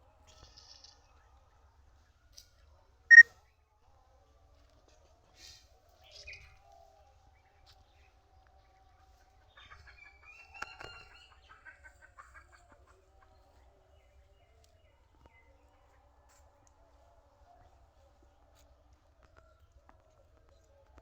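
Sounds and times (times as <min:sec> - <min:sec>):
chicken clucking: 0:09.2 - 0:13.6.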